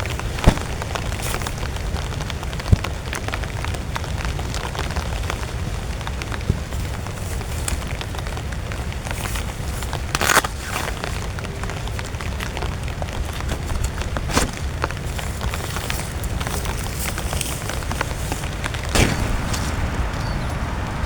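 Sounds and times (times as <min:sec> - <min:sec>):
heavy rain on a tent: 0:00.0 - 0:21.0
low rumble of wind: 0:00.0 - 0:21.0
sudden hits on tent: 0:00.1 - 0:01.7.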